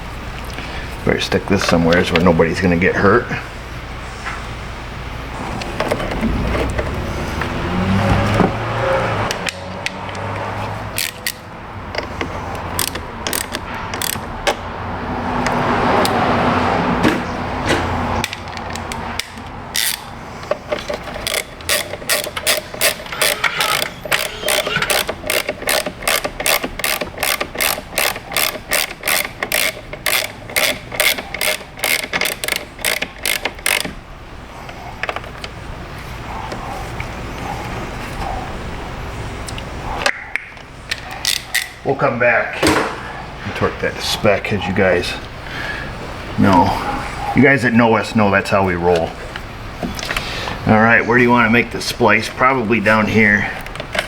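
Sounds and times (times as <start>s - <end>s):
hand ratchet clicking: 9.3s - 14.7s, 18.2s - 34.0s, 40.9s - 41.8s.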